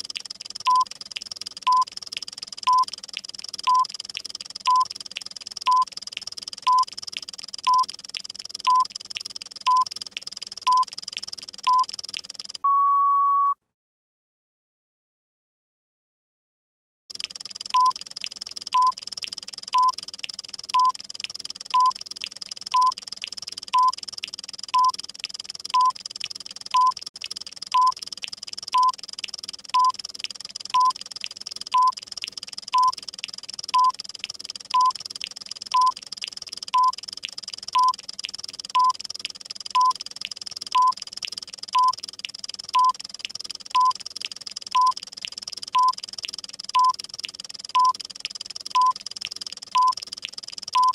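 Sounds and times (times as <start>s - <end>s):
clock ticking: 0.0s - 12.6s, 17.1s - 50.9s
short electronic beeps: 0.7s - 0.9s, 3.6s - 3.9s, 4.7s - 4.9s, 6.6s - 6.9s, 7.6s - 7.9s, 8.6s - 8.9s, 9.7s - 9.9s, 11.6s - 11.9s, 12.6s - 13.6s, 17.7s - 18.0s, 19.8s - 20.0s, 21.7s - 22.0s, 22.7s - 23.0s, 23.8s - 24.0s, 24.8s - 25.0s, 25.8s - 26.0s, 26.7s - 27.0s, 27.7s - 28.0s, 28.8s - 29.0s, 29.8s - 30.0s, 30.7s - 31.0s, 31.7s - 32.0s, 32.8s - 33.0s, 33.7s - 34.0s, 34.7s - 35.0s, 35.7s - 36.0s, 36.8s - 37.0s, 37.8s - 38.0s, 38.8s - 39.0s, 40.7s - 41.0s, 41.8s - 42.0s, 44.7s - 45.0s, 45.7s - 46.0s, 46.8s - 47.0s, 47.8s - 48.0s, 49.7s - 50.0s.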